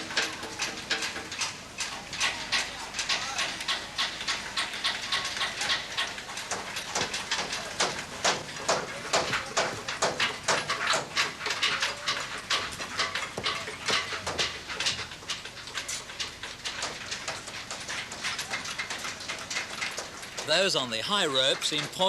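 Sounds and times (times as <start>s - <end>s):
hammering knocks: 6.5s - 15.0s.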